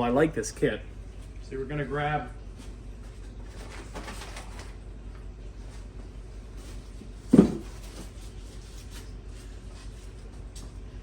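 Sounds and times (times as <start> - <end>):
low shop hum: 0.0 - 11.0
dull knock of tool set down: 7.3 - 7.8.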